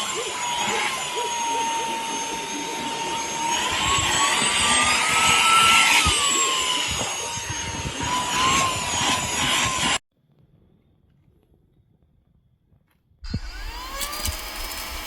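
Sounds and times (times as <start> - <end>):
handheld vacuum motor whining: 0.0 - 10.0, 13.3 - 15.0.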